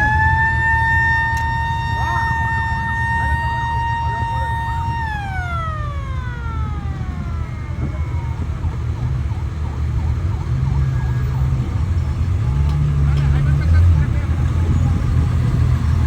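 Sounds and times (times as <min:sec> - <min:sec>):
siren-like tone winding down: 0:00.0 - 0:11.7
vehicle engine rumble: 0:00.0 - 0:16.0.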